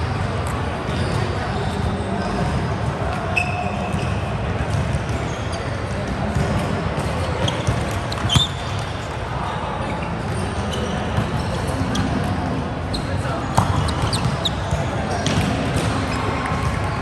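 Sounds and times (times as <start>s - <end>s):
steady background noise: 0.0s - 17.0s
voices around the court: 0.0s - 17.0s
shoe squeaks: 3.3s - 4.2s, 5.1s - 5.9s, 7.2s - 12.2s, 12.9s - 16.6s
volleyball hit and bouncing: 6.2s - 9.4s, 13.5s - 17.0s.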